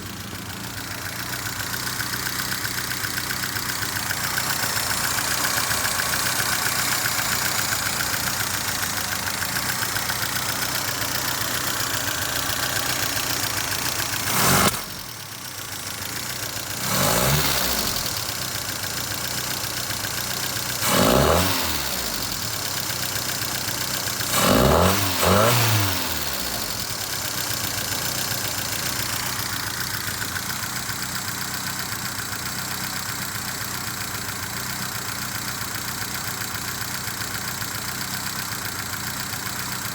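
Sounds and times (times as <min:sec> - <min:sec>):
car engine idling roughly: 0:00.0 - 0:39.9
engine revving: 0:03.5 - 0:15.2, 0:15.8 - 0:29.8.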